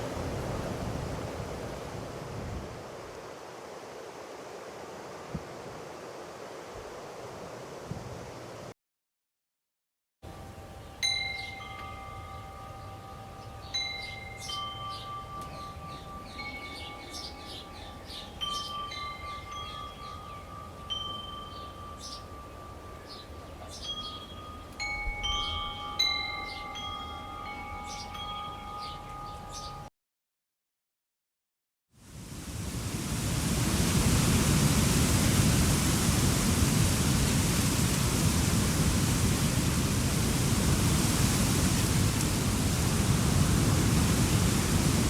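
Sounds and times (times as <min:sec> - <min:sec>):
wind chimes jingling: 0:10.3 - 0:29.9.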